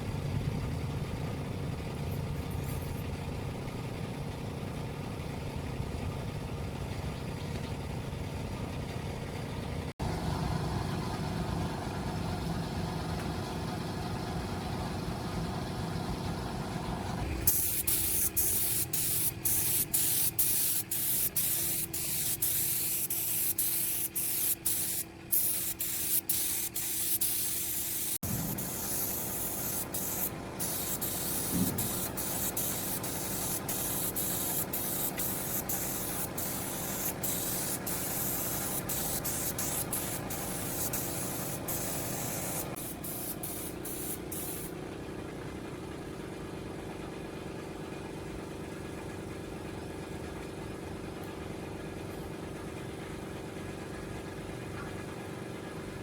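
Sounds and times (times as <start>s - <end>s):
hissing spray bursts: 17.5s - 44.7s
motorcycle engine idling: 17.5s - 51.2s.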